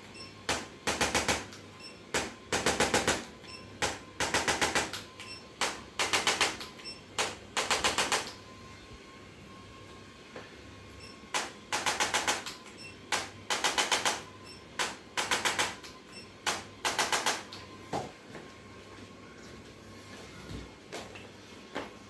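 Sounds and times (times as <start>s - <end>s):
rapid mechanical clicking: 0.5s - 8.4s, 11.3s - 17.5s.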